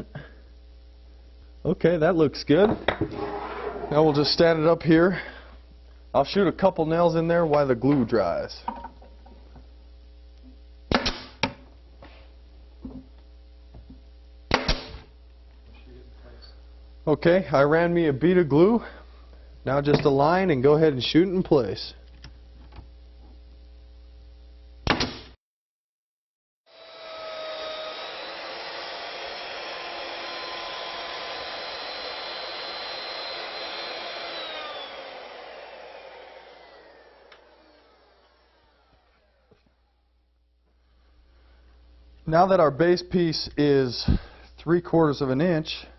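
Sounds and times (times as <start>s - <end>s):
nail gun firing: 10.9s - 11.6s, 14.5s - 15.0s, 24.8s - 25.3s
power tool motor whining: 26.7s - 39.6s.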